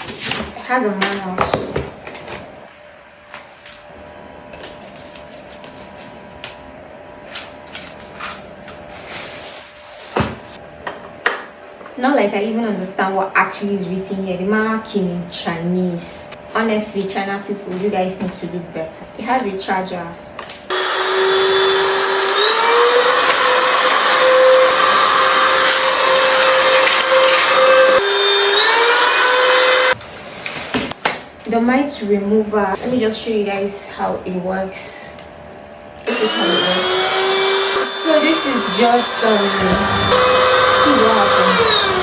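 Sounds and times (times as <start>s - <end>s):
vacuum cleaner motor whine: 20.7s - 30.0s, 36.0s - 42.0s.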